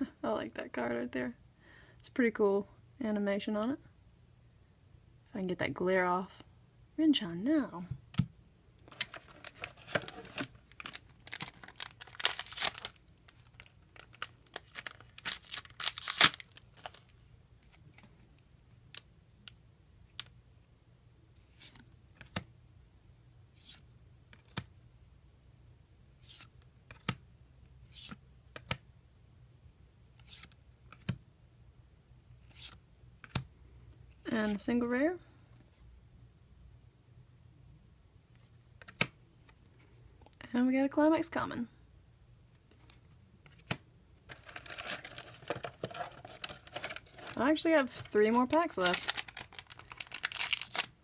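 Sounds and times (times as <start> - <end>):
foil pack tearing and crinkling: 9.0 - 17.0, 44.3 - 51.0.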